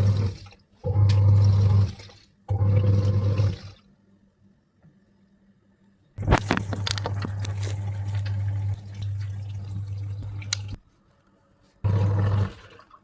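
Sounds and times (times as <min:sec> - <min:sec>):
water gushing into washing machine: 0:00.0 - 0:03.9, 0:06.6 - 0:10.8, 0:11.9 - 0:13.0.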